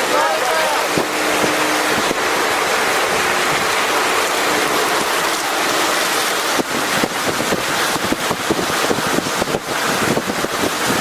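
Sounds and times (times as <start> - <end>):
rain: 0.0 - 11.0
wind on microphone: 0.7 - 11.0.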